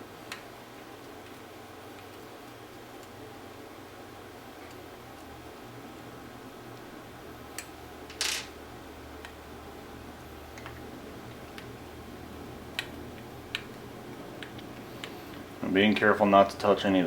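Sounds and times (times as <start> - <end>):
low steady hum: 0.0 - 17.0.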